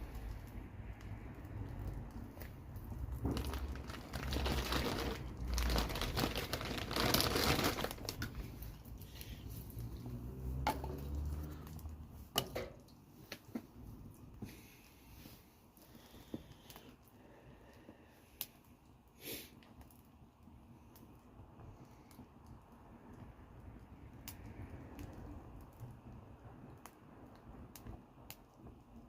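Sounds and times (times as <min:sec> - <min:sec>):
crinkling rustling handling noise: 0:01.7 - 0:12.3.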